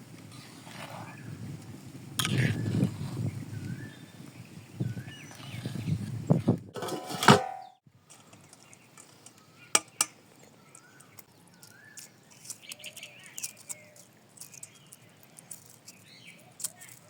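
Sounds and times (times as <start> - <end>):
faint birds chirping: 7.6 - 17.0.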